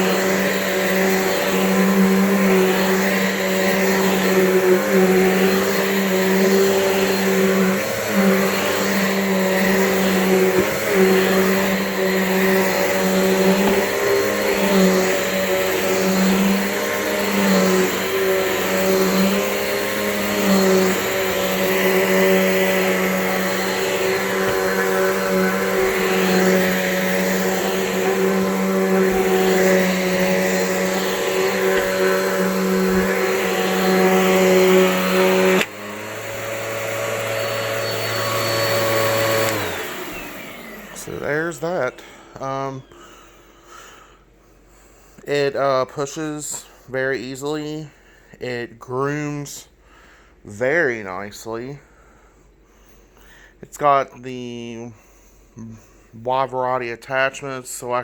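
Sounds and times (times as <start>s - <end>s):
vacuum cleaner running on carpet: 0.0s - 43.0s.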